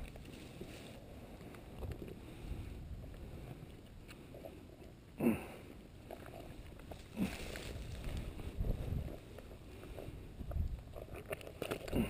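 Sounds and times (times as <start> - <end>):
wind rumble: 6.6 - 11.1
microphone handling noise: 6.9 - 9.4.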